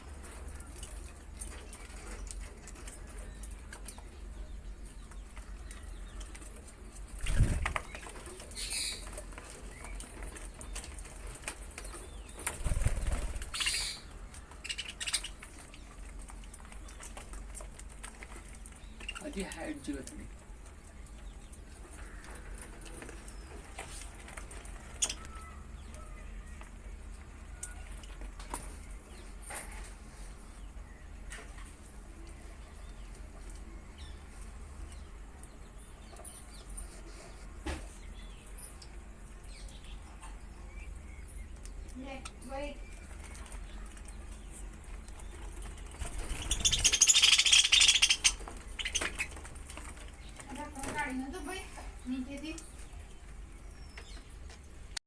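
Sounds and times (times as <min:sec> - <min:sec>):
budgerigars chirping softly: 0:07.3 - 0:10.1, 0:12.1 - 0:16.0, 0:24.8 - 0:26.4, 0:39.6 - 0:53.0
budgerigars chirping: 0:08.6 - 0:09.2, 0:12.6 - 0:16.0, 0:45.8 - 0:50.4.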